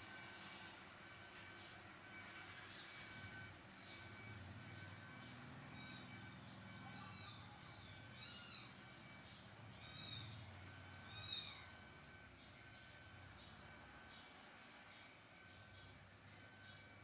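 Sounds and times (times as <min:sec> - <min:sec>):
baby monkey high calls: 0:08.2 - 0:08.8, 0:09.8 - 0:10.3.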